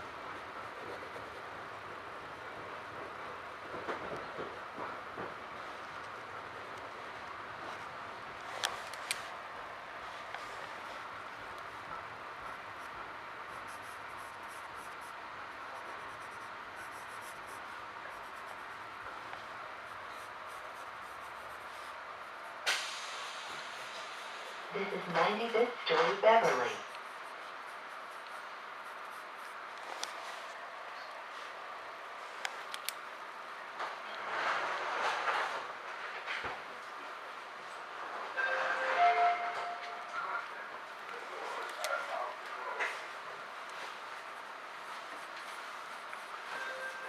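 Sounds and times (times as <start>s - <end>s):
train car hiss and rumble: 0.0s - 47.0s
pencil scratching on paper: 0.4s - 1.8s, 12.4s - 22.6s, 26.8s - 30.5s.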